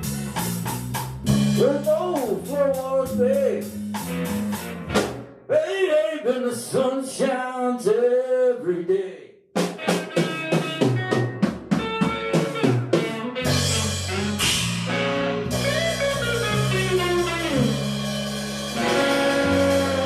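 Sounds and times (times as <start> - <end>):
blues band playing: 0.0 - 5.4, 9.6 - 20.0.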